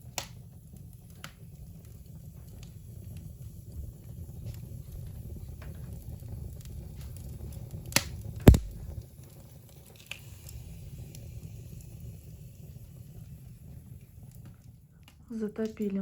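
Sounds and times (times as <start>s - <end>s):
wood fire crackling: 0.0s - 16.0s
sharp knocks: 8.5s - 8.8s.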